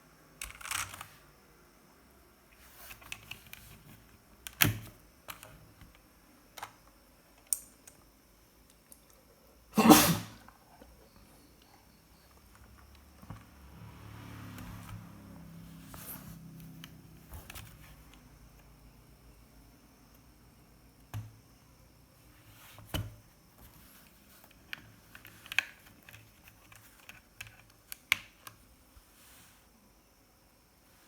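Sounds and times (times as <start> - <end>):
mechanical keyboard key clicks: 0.4 - 1.1.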